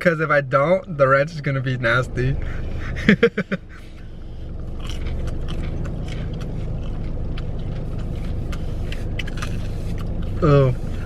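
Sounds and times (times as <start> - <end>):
car engine hum: 0.0 - 11.0
person chewing: 3.6 - 11.0.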